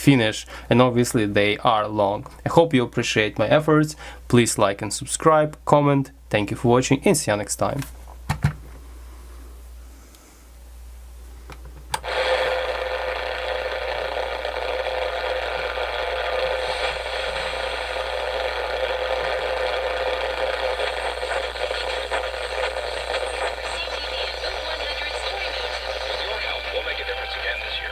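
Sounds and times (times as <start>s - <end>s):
radio static hiss: 12.0s - 27.9s.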